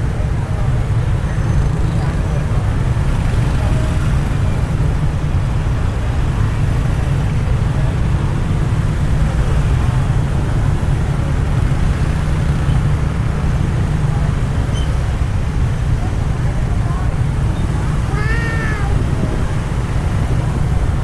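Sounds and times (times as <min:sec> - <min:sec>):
traffic rumble: 0:00.0 - 0:21.0.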